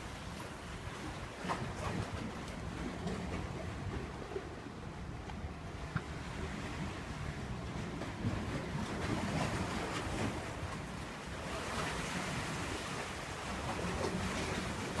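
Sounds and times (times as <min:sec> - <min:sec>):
sea waves washing on shore: 0:00.0 - 0:15.0
wind rumbling on microphone: 0:00.0 - 0:15.0.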